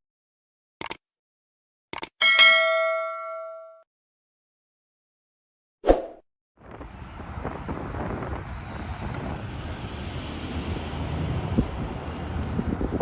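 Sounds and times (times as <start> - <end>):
wind buffeting microphone: 6.6 - 13.0.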